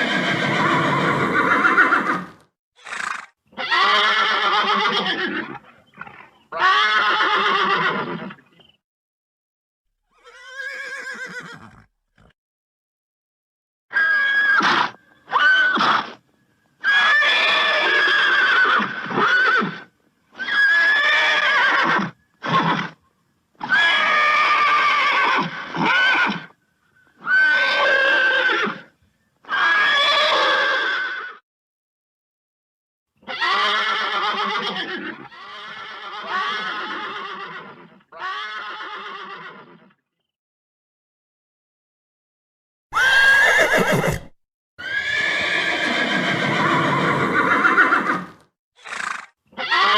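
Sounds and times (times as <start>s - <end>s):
horse neighing: 0.0s - 8.4s, 10.1s - 12.3s, 33.2s - 39.9s, 43.0s - 49.9s.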